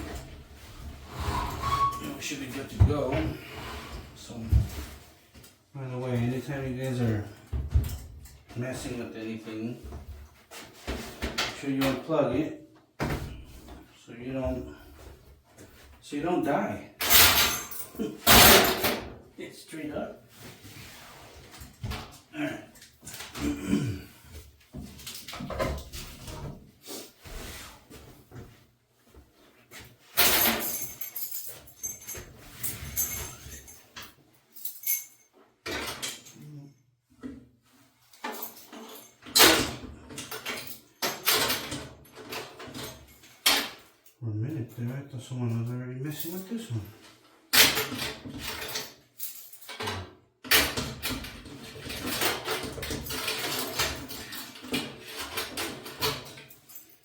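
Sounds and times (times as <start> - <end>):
sheet metal clattering and scraping: 0.0 - 4.2
metal parts clattering: 17.0 - 19.0, 30.2 - 33.8, 51.7 - 57.0
light metallic jingling: 30.4 - 35.4.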